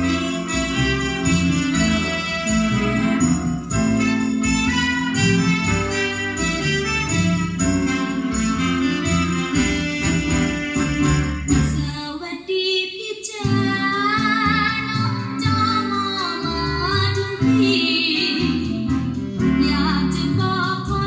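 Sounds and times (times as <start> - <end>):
woman singing with vibrato: 0.0 - 3.2, 11.5 - 21.0
guitar-led instrumental music: 0.0 - 11.9, 13.5 - 21.0.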